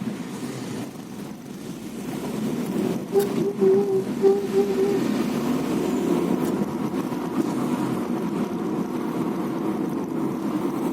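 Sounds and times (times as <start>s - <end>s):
car running and road noise: 0.0s - 10.9s
car wavering squeal: 3.1s - 5.4s.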